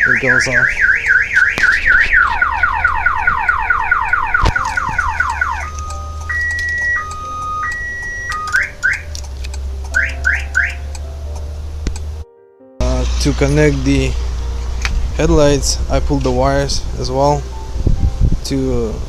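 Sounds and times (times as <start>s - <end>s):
car alarm siren: 0.0s - 9.2s, 9.9s - 11.0s.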